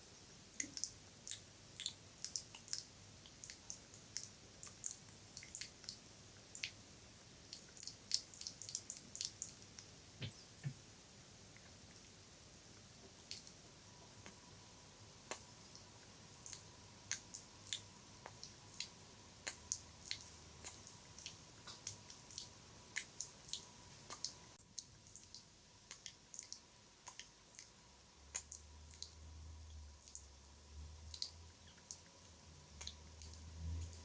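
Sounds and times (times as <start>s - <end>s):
wet mouth clicks and smacks: 16.4s - 27.7s.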